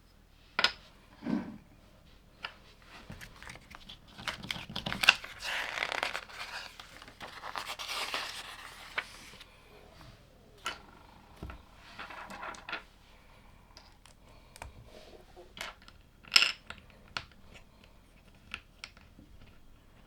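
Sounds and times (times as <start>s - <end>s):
scratchy rustle: 2.9s - 9.5s.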